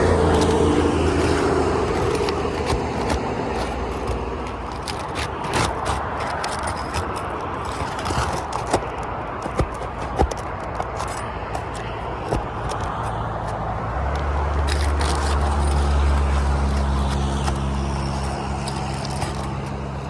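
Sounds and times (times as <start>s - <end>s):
passing vehicle engine hum: 0.0s - 6.2s
roof shingles scraping and clicking: 0.0s - 20.0s.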